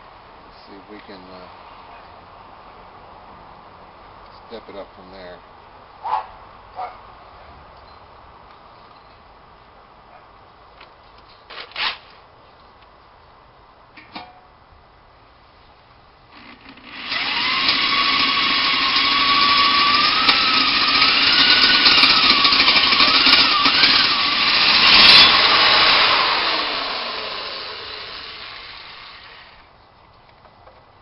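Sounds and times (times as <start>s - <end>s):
electric drill whining: 16.3s - 29.7s.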